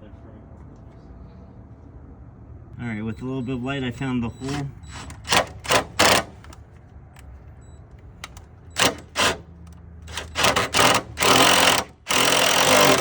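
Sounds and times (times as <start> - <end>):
impact driver bursts: 4.4 - 6.6, 8.2 - 9.5, 10.1 - 13.0.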